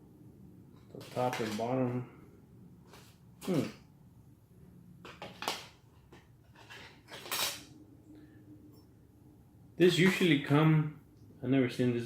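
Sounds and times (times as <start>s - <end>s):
packaging rustling and crinkling: 0.9s - 1.7s.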